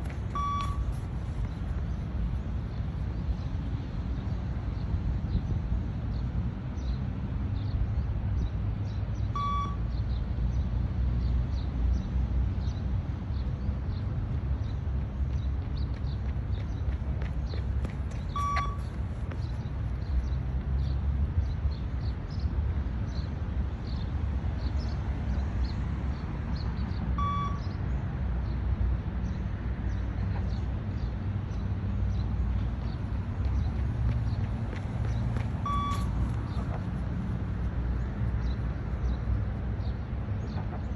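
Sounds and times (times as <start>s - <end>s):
short electronic beep: 0.4s - 0.9s, 9.4s - 9.8s, 18.4s - 18.8s, 27.2s - 27.6s, 35.6s - 36.1s.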